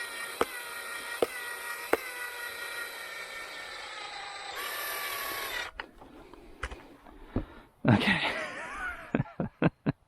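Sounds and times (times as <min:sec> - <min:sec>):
power drill whining: 0:00.0 - 0:06.1.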